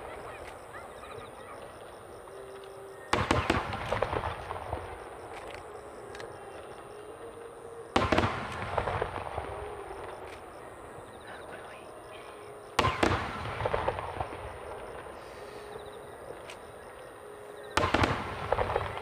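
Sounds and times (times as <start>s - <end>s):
fireworks crackling: 2.5s - 6.3s, 8.0s - 10.6s, 12.8s - 16.7s, 17.8s - 19.0s
fireworks booming: 3.1s - 5.3s, 8.0s - 10.3s, 12.8s - 16.4s, 17.8s - 19.0s.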